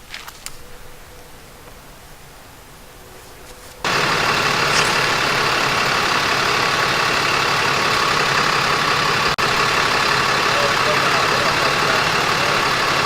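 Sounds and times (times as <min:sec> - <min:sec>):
heavy vehicle engine idling: 0:03.8 - 0:13.0.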